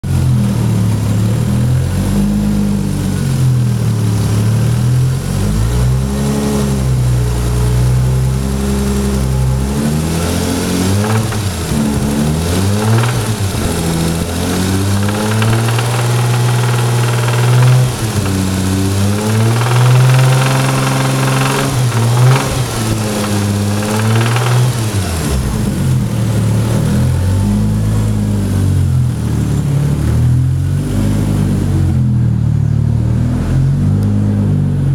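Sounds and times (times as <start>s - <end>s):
car engine revving: 0.0s - 34.9s
engine rod knock: 11.0s - 25.3s.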